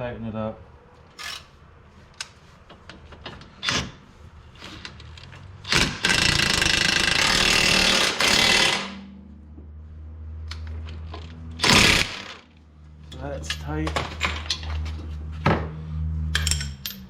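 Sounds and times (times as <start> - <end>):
impact wrench running: 5.7 - 9.1, 11.6 - 12.4
tools clicking: 16.3 - 17.0.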